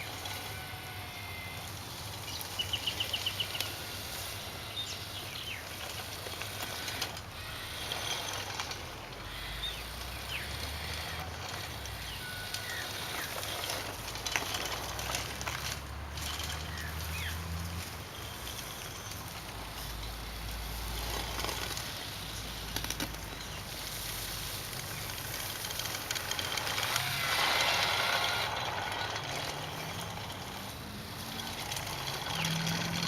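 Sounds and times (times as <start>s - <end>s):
small birds chirping: 1.3s - 6.4s, 9.3s - 14.0s, 16.4s - 26.2s.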